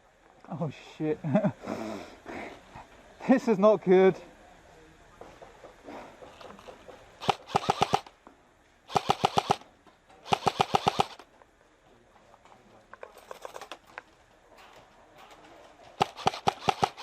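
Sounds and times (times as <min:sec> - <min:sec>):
airsoft gun firing: 0:07.2 - 0:08.1, 0:08.9 - 0:11.2, 0:16.0 - 0:17.0.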